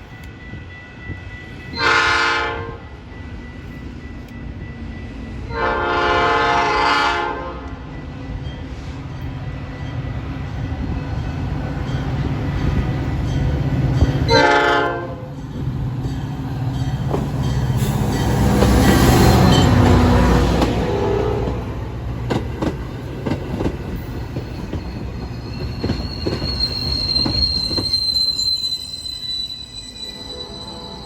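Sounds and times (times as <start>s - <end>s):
train rumbling: 0.0s - 31.0s
locomotive air horn chord: 1.8s - 2.8s, 5.5s - 7.7s, 14.3s - 15.3s, 30.1s - 31.0s.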